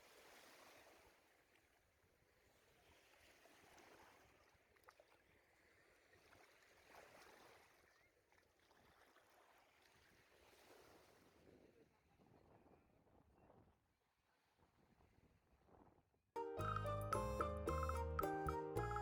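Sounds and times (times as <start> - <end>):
faint waves on the shore: 0.0 - 11.8.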